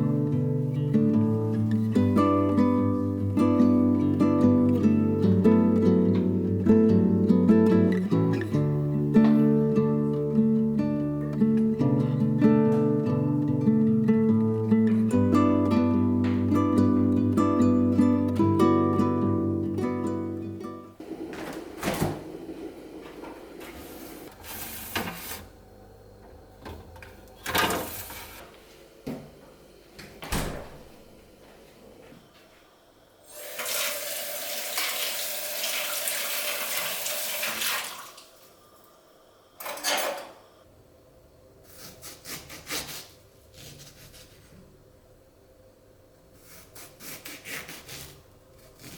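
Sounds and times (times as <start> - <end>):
water running from tap: 33.3 - 38.3.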